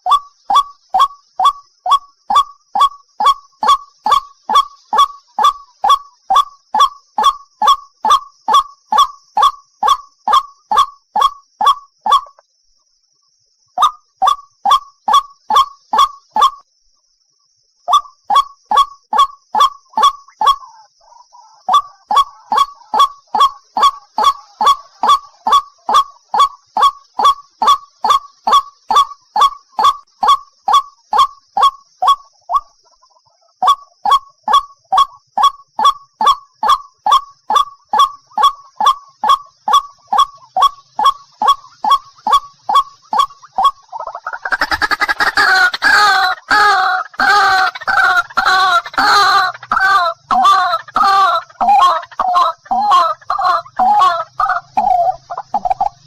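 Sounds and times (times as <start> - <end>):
bird calling harsh notes: 21.6 - 32.8, 33.6 - 56.0.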